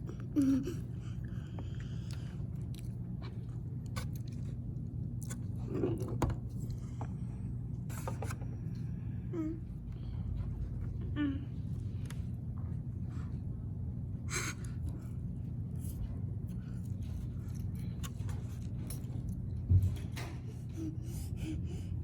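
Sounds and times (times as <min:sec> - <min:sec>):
child chewing: 0:00.0 - 0:07.2, 0:14.3 - 0:21.9
steady low hum: 0:00.0 - 0:22.0.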